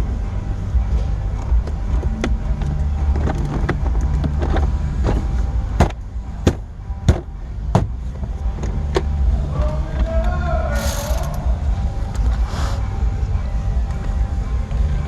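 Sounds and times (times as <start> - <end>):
hand tools clicking on plastic trim: 10.8 - 11.4
loud clicks: 10.8 - 11.4.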